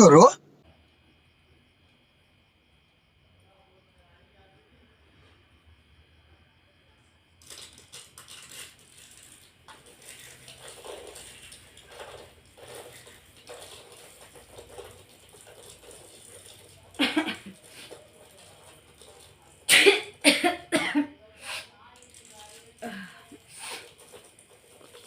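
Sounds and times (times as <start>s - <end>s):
woman sneezing: 19.7s - 21.7s.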